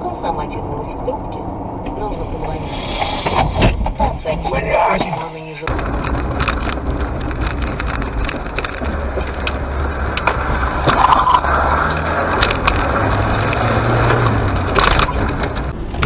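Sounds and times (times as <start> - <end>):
car engine and road noise: 0.0 - 16.0
clicks and rattles: 5.7 - 16.0.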